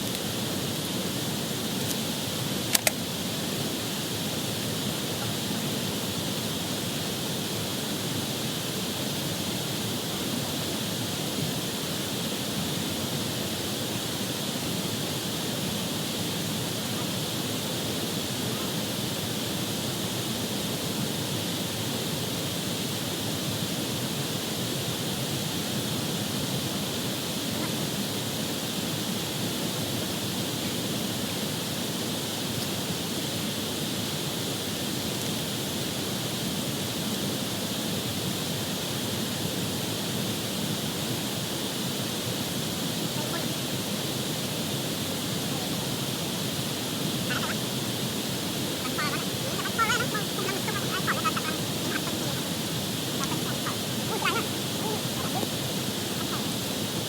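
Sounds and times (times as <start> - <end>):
high outdoor hiss: 0.0 - 57.0
sharp clicks: 2.7 - 3.0.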